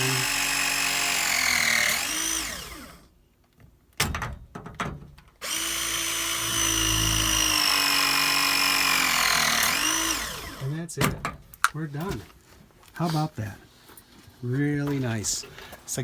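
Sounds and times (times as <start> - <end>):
press tool motor whining: 0.0 - 3.1, 5.4 - 10.7.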